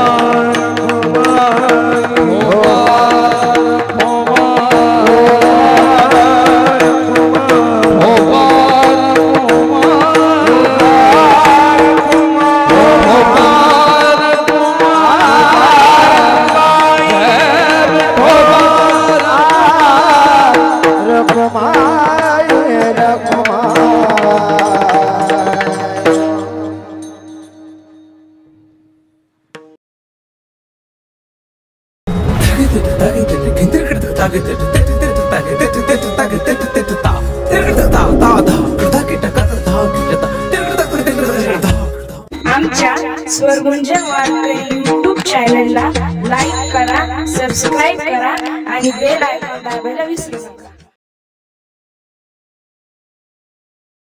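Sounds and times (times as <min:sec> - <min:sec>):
devotional singing: 0:00.0 - 0:26.1, 0:32.6 - 0:42.1
held drone: 0:37.2 - 0:40.5.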